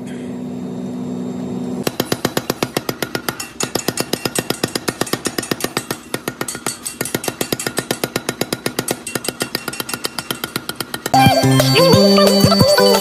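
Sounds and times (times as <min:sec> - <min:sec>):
hammer striking iron: 0:01.8 - 0:11.2.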